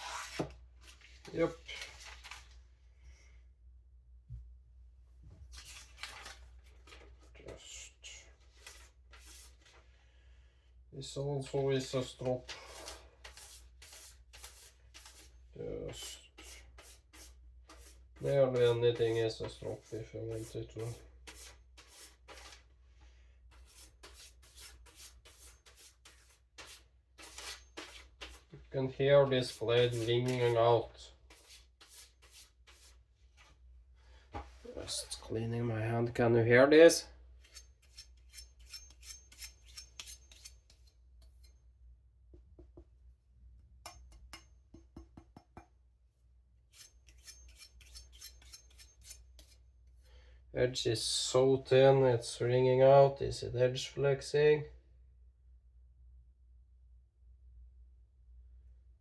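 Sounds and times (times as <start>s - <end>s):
knife stropping swishes: 8.6s - 9.7s, 23.6s - 28.5s, 29.4s - 30.7s, 31.3s - 33.5s, 37.4s - 41.5s, 46.8s - 49.6s
knife scraping on sharpener: 12.7s - 15.3s, 16.0s - 22.6s, 23.5s - 28.4s, 29.5s - 30.6s, 37.4s - 41.6s, 46.8s - 49.6s.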